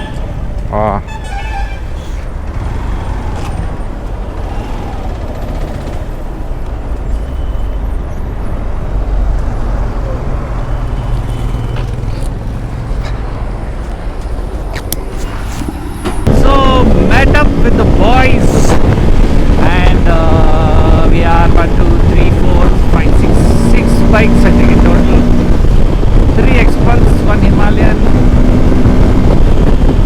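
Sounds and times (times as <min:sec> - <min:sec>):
wind and road noise: 0:00.0 - 0:30.0.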